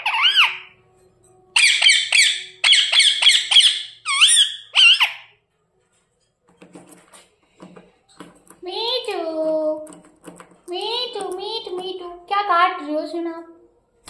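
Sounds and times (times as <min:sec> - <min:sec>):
parrot squawks and chirps: 0:00.0 - 0:00.8, 0:01.6 - 0:05.4.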